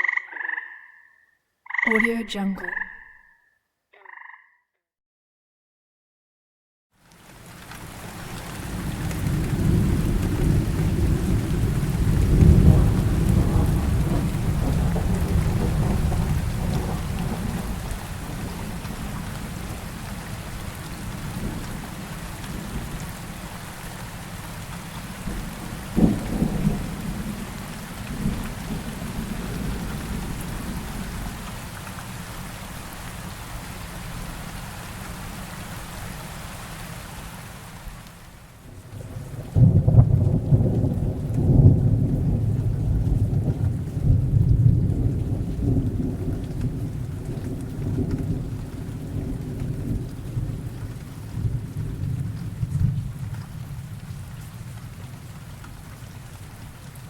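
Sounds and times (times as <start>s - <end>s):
steady rain: 7.0s - 57.0s
deep rolling thunder: 8.4s - 23.1s, 25.1s - 31.4s, 38.7s - 55.2s
sharp thunder crack: 8.8s - 18.8s, 25.3s - 27.5s.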